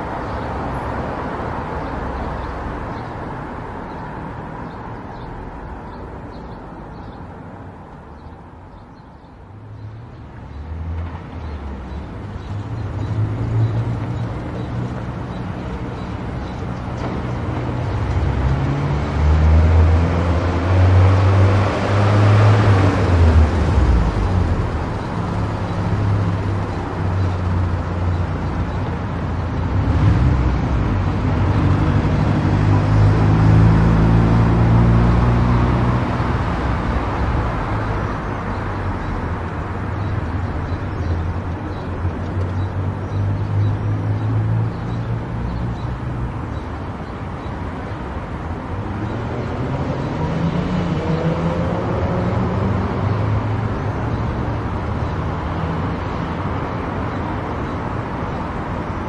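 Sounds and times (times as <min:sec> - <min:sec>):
tyre noise on road: 0:00.0 - 0:59.0.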